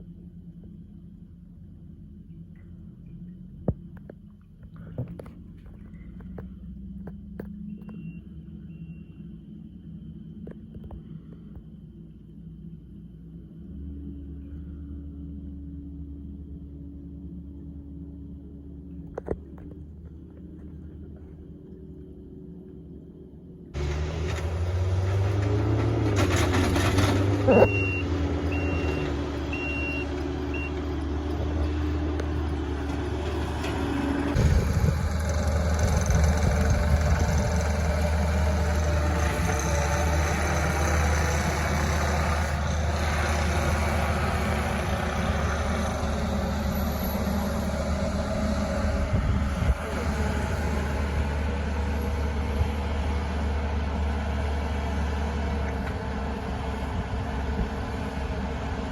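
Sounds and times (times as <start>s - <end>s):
diesel engine running: 0.0s - 58.9s
backup alarm beeping: 27.5s - 30.9s.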